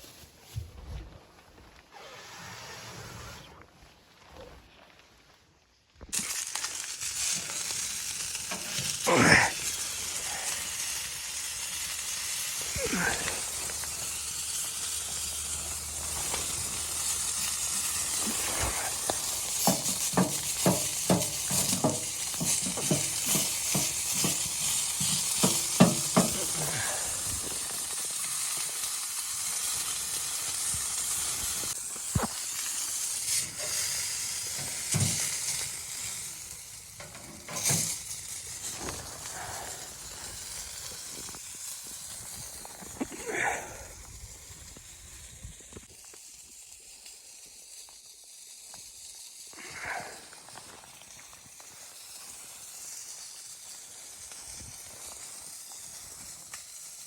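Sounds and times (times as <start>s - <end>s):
food sizzling in a pan: 6.1s - 57.0s
utensil knocking and scraping: 18.6s - 26.6s.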